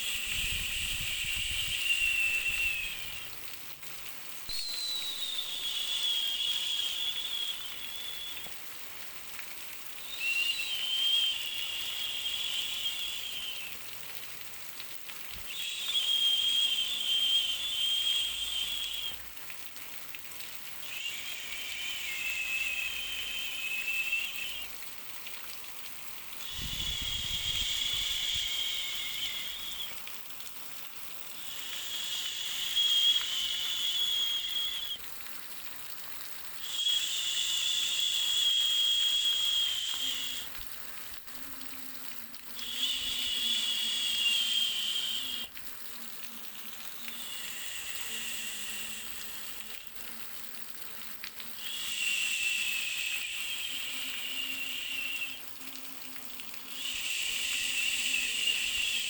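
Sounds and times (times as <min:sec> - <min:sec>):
high buzzing insect call: 0:04.6 - 0:08.4, 0:10.1 - 0:13.7, 0:20.8 - 0:24.7, 0:26.5 - 0:30.0, 0:31.4 - 0:35.0, 0:36.6 - 0:40.5, 0:42.6 - 0:45.5, 0:47.0 - 0:49.8, 0:51.6 - 0:55.4, 0:56.7 - 0:59.0.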